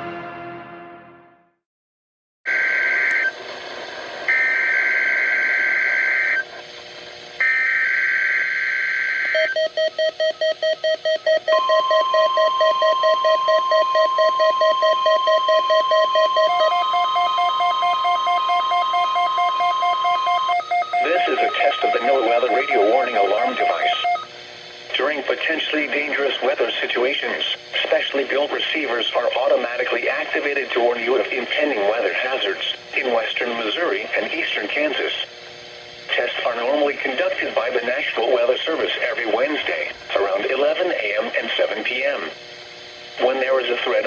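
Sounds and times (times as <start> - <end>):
steady warning tone: 9.2 - 24.3
beeping alarm: 9.3 - 24.3
screeching digital data tones: 11.5 - 24.3
person speaking: 20.9 - 24.2.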